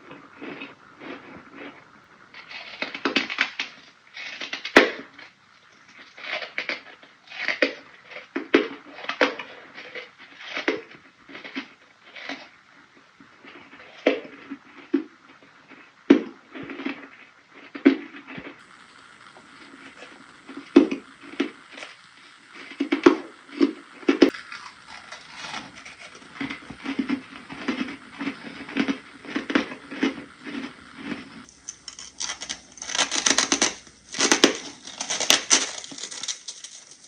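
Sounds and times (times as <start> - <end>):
crunching ice bites: 24.3 - 37.0.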